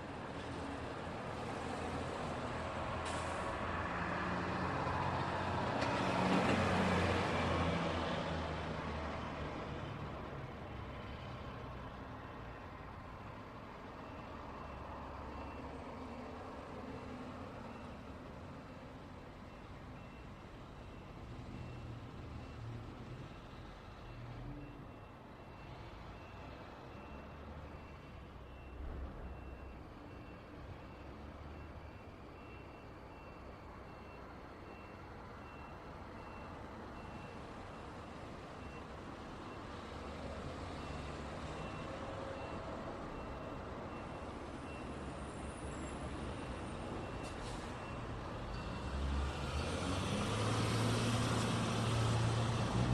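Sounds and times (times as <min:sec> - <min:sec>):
road traffic rumble: 0:00.0 - 0:52.9
faint high beep: 0:14.0 - 0:15.8, 0:40.8 - 0:49.0.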